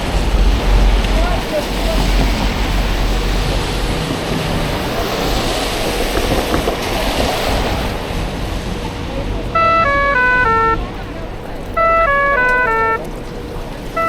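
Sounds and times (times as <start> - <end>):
traffic rushing: 0.0 - 14.0
wind noise: 0.0 - 14.0
stepped electronic beeping tones: 9.6 - 10.8, 11.8 - 13.1.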